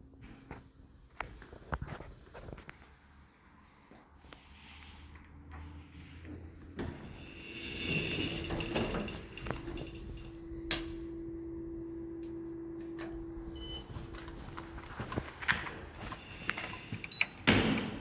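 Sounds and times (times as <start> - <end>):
elevator machinery hum: 5.0 - 18.0.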